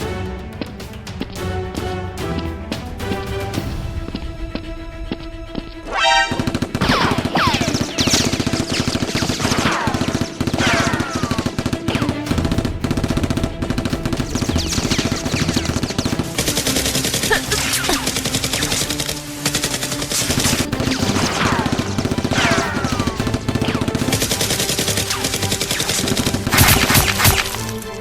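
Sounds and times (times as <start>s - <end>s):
background music: 0.0s - 28.0s
rapid automatic gunfire: 6.3s - 27.7s.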